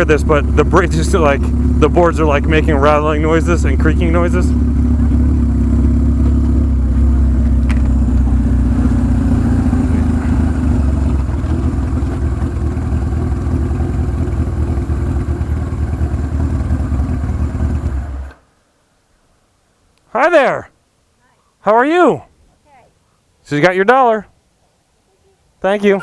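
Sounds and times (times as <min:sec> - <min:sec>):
motorcycle engine running: 0:00.0 - 0:18.3.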